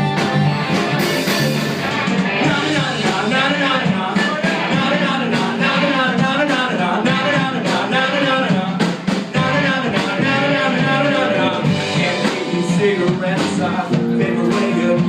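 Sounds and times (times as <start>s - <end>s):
rock band playing: 0.0s - 15.0s
lead singer singing: 2.0s - 15.0s.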